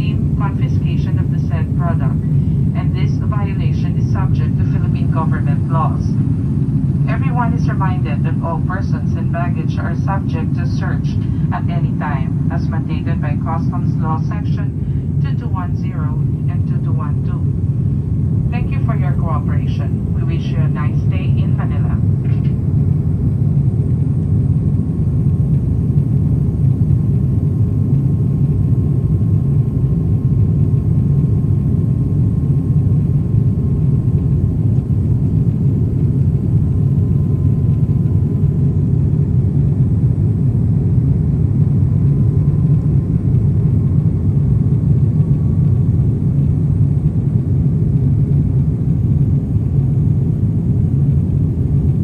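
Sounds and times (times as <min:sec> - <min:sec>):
airliner cabin rumble: 0:00.0 - 0:52.0.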